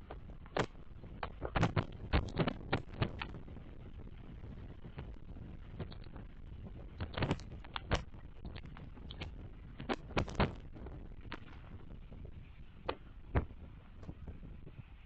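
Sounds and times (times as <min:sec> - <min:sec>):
low wind rumble: 0:00.0 - 0:15.0
sharp clicks and knocks: 0:07.0 - 0:10.6.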